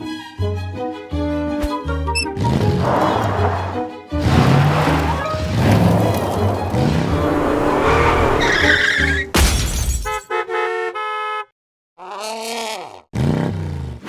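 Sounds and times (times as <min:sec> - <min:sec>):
falling glide: 0:04.2 - 0:09.2.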